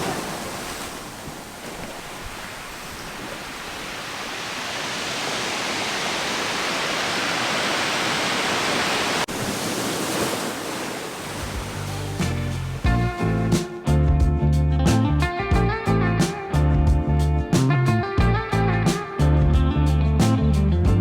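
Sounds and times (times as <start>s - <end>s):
waves washing over rocks: 0.0s - 13.0s
guitar music: 11.6s - 21.0s.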